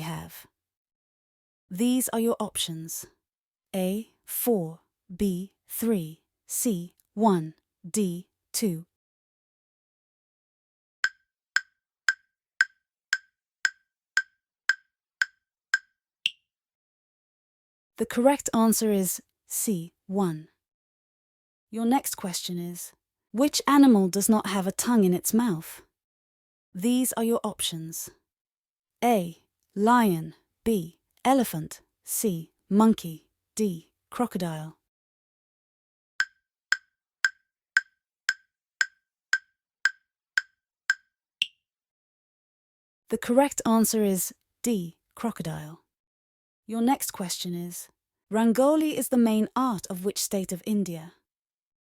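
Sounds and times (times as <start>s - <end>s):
countdown timer ticks: 11.0s - 16.4s, 36.2s - 41.6s.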